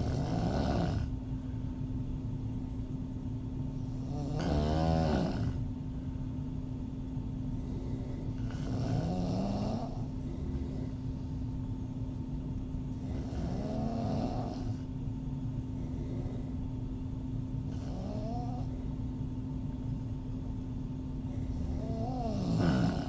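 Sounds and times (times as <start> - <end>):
woman snoring: 0.0 - 1.1, 4.0 - 5.6, 7.5 - 11.0, 12.9 - 14.9, 17.6 - 18.8, 21.3 - 23.0
steady low hum: 0.0 - 23.0.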